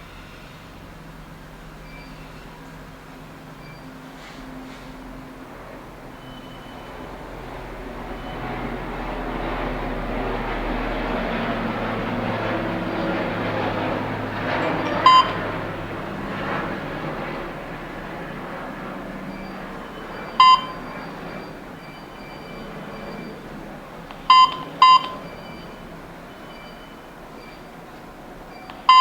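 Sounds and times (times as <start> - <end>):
keypad beep: 14.6 - 15.4.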